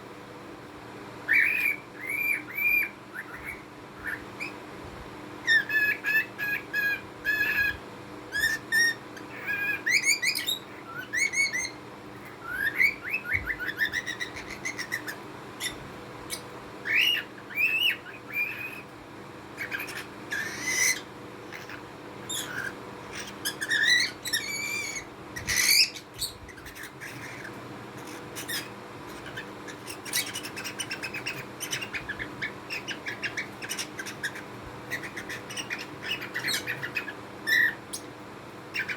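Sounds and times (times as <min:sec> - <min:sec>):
small birds chirping and whistling: 0:01.2 - 0:04.7, 0:05.4 - 0:18.9, 0:19.5 - 0:38.9.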